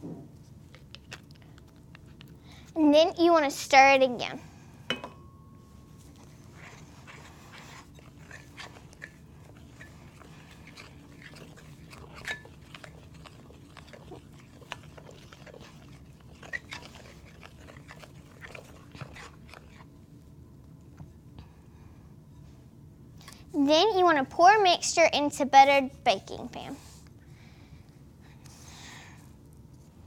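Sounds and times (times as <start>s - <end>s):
spoon stirring in a bowl: 5.9s - 19.8s.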